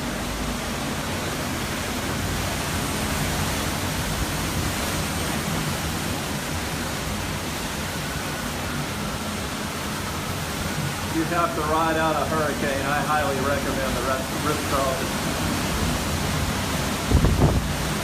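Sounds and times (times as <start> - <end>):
strong wind rushing: 10.6 - 18.0.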